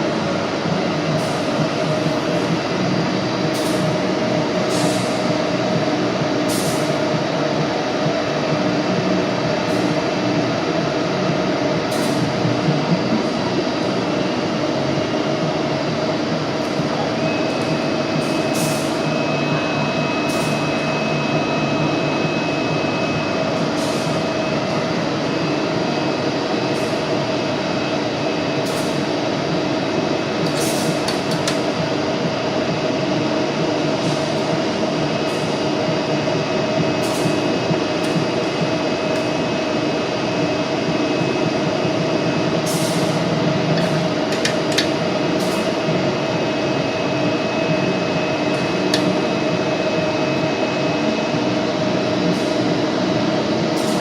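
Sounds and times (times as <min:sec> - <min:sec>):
high whine: 0:00.0 - 0:54.0
machinery humming: 0:00.0 - 0:54.0.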